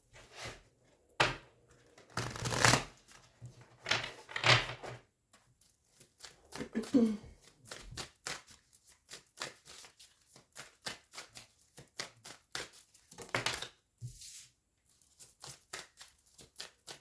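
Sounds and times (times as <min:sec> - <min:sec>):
cards being shuffled: 0:02.0 - 0:03.0.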